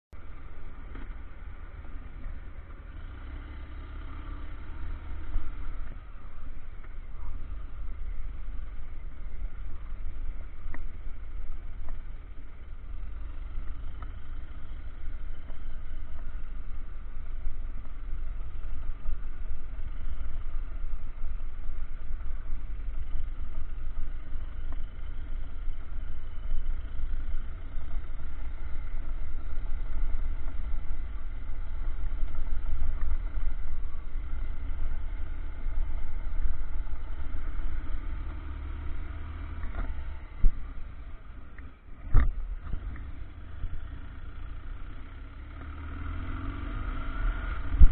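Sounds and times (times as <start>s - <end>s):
off-road vehicle engine rumble: 0.1s - 47.9s.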